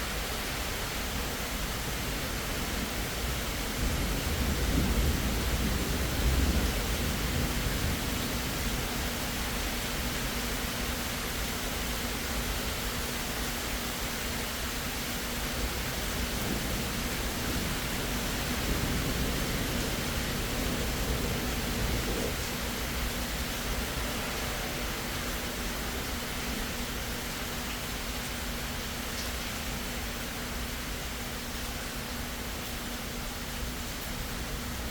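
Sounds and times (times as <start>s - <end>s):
steady rain hiss: 0.0s - 34.9s
low thunder rumble: 1.8s - 10.2s, 15.6s - 30.1s.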